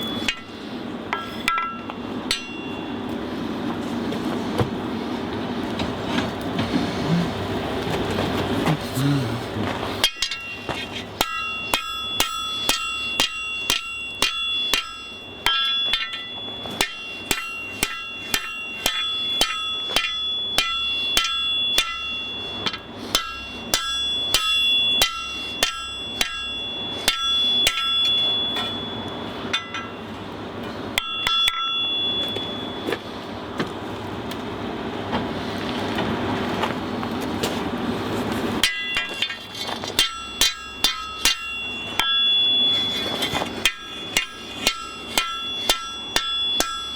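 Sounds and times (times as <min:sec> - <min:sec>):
hammer striking steel on anvil: 0:00.0 - 0:03.0, 0:10.0 - 0:30.1, 0:30.9 - 0:33.0, 0:38.6 - 0:46.9.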